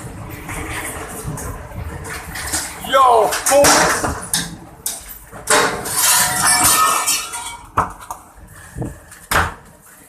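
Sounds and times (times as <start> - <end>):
broken glass clinking: 5.8 - 7.7.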